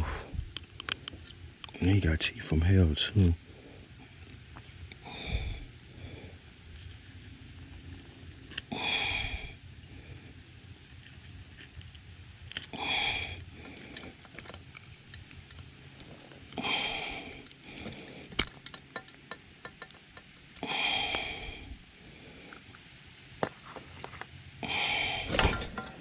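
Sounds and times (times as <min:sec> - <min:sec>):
person breathing or sniffing: 0:00.0 - 0:00.4, 0:12.8 - 0:14.1
handling clicks and taps: 0:18.3 - 0:20.3.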